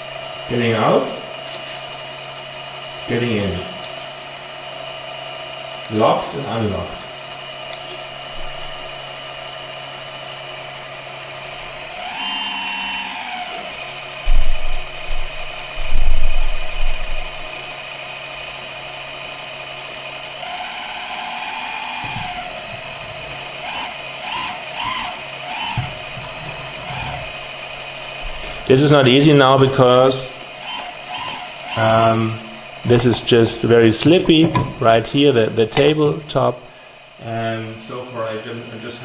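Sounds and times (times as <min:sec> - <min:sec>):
hydraulic pump whine: 0:00.0 - 0:39.0
loud knocks: 0:14.2 - 0:17.2, 0:34.2 - 0:34.8.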